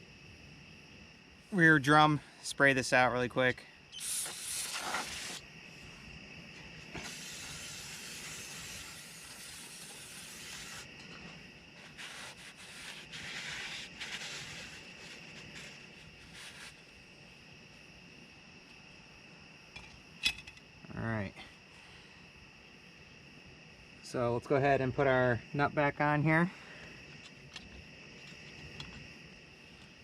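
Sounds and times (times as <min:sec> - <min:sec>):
spray can hissing: 0:04.0 - 0:05.4, 0:07.0 - 0:10.9.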